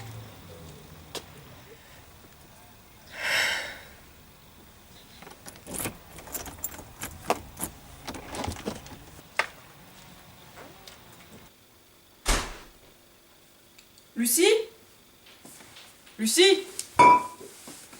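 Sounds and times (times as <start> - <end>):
keys jangling in door lock: 5.4 - 8.9.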